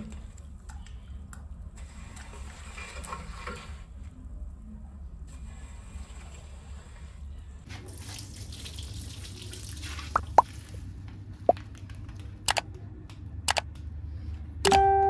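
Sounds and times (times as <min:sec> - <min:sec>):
water hissing and dripping: 0:07.7 - 0:10.8
water drops plinking: 0:10.1 - 0:10.5
sharp clicks: 0:13.5 - 0:13.8.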